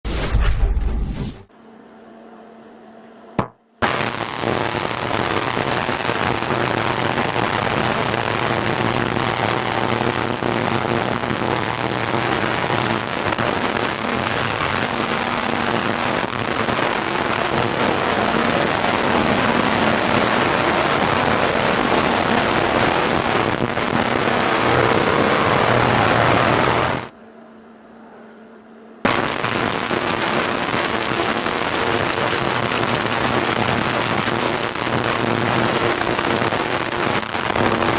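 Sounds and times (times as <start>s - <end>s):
low hum: 0.1s - 31.5s
ultrasonic cleaner hiss and crackle: 3.8s - 27.1s, 29.1s - 37.9s.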